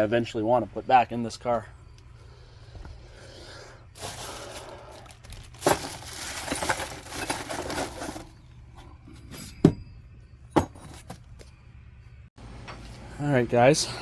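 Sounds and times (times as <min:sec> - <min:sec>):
metal parts rummaged in a box: 0:04.0 - 0:09.6.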